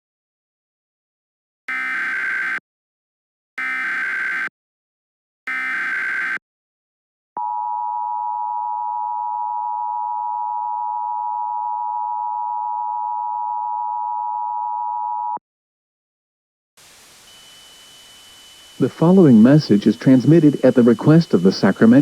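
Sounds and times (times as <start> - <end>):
faint static hiss: 18.6 - 22.0.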